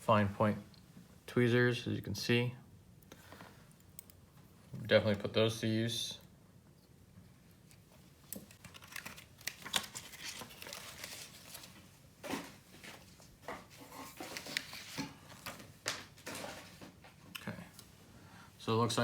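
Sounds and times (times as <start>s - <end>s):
packaging crinkling and rustling: 8.2s - 17.0s.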